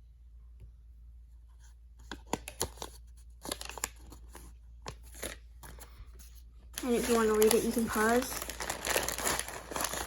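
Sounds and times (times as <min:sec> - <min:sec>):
packaging crinkling: 0:02.4 - 0:04.4, 0:06.7 - 0:10.0.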